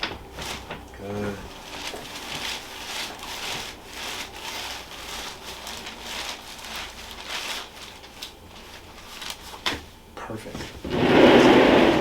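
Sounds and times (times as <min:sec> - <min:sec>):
rubbing and rustling: 0:00.0 - 0:09.7.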